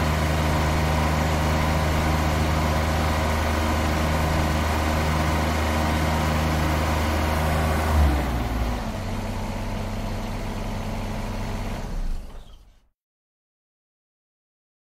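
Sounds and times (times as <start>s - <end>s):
truck engine running: 0.0s - 12.5s.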